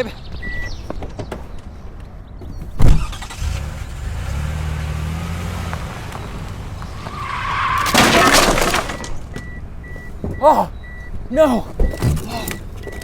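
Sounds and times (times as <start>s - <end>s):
car engine running: 3.4s - 7.4s
tyre screech: 6.8s - 9.2s
loud crash: 7.4s - 9.3s.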